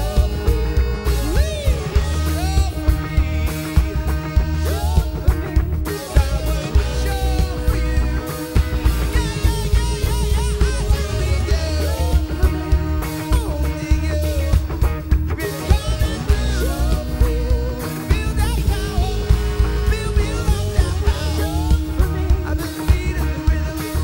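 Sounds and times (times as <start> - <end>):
person singing: 0.0 - 24.0
rock band playing: 0.0 - 24.0.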